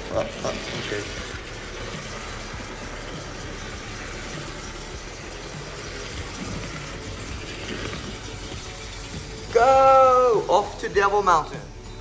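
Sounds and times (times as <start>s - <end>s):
model train motor whirring: 0.0s - 9.5s.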